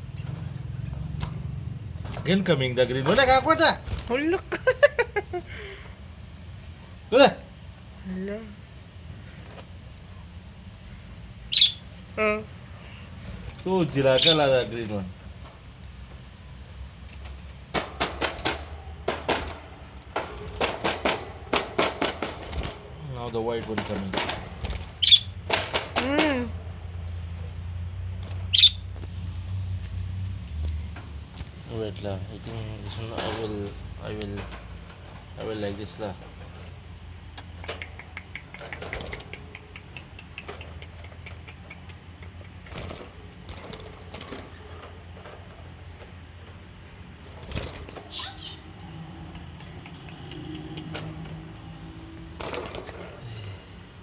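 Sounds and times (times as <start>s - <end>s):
steady low hum: 0.0s - 54.0s
budgerigars chirping: 11.5s - 11.9s, 14.0s - 14.9s, 24.9s - 25.4s, 28.4s - 28.9s.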